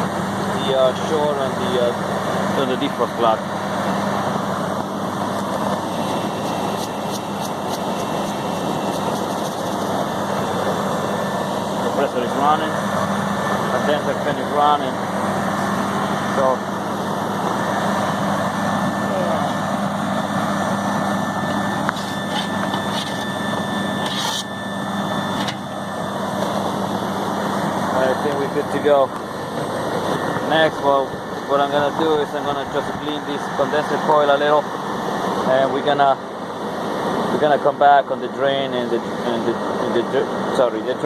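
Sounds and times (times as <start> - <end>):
compressor low hum: 0.0 - 41.0
condenser fan rushing: 0.0 - 41.0.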